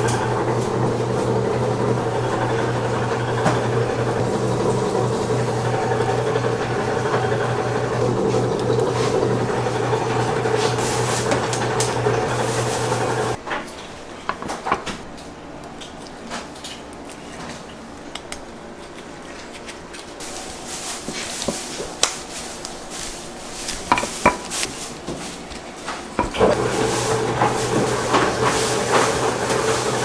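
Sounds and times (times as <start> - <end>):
kitchen utensils clinking: 23.7 - 25.4, 26.0 - 30.0.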